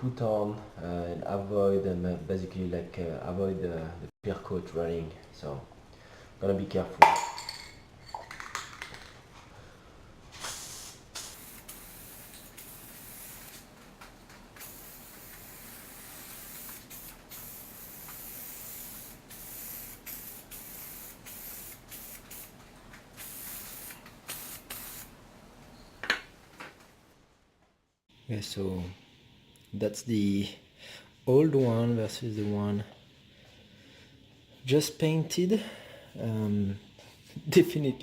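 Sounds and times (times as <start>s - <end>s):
aerosol spray can hissing: 10.4s - 13.7s, 14.6s - 25.1s.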